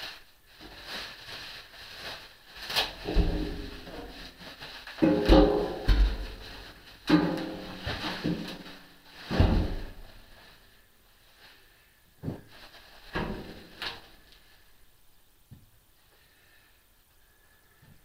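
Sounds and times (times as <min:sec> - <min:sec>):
metallic clanks and bangs: 0:03.0 - 0:04.3, 0:05.0 - 0:10.0.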